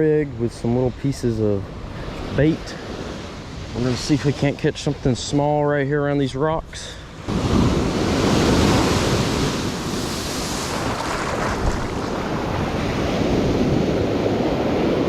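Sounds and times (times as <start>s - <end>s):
ocean surf washing ashore: 0.0s - 15.0s
wind rumbling on microphone: 7.1s - 15.0s.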